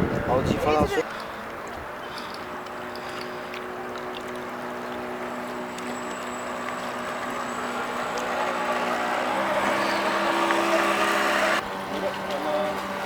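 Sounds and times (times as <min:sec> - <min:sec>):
water wash: 0:00.9 - 0:13.0
electric motor whine: 0:06.1 - 0:13.0.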